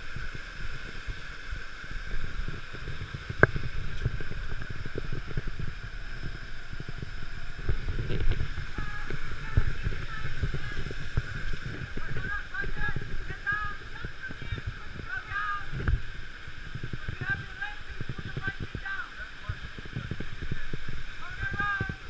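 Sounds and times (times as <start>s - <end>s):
rushing water: 0.0s - 22.0s
wind buffeting microphone: 0.0s - 22.0s.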